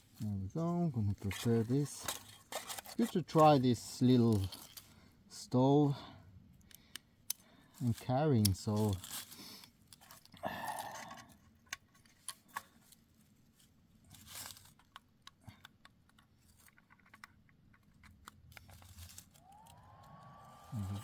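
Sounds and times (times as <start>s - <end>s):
twigs crunching and scraping: 1.2s - 5.1s, 7.8s - 15.0s, 17.8s - 21.0s.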